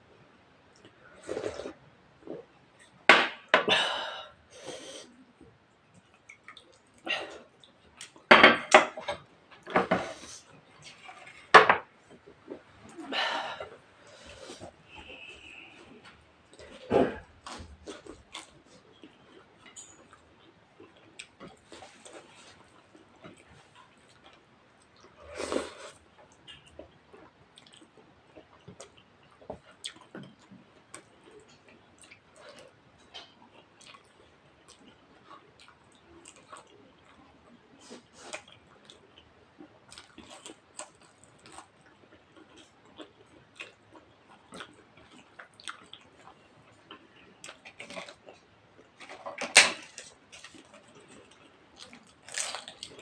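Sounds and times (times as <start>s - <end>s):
wet chewing: 37.8s - 49.3s.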